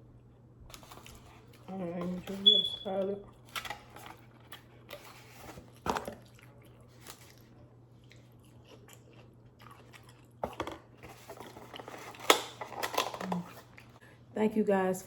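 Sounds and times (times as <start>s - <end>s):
faint low hum: 0.0s - 15.0s
person chewing food: 0.7s - 1.7s, 3.3s - 14.0s.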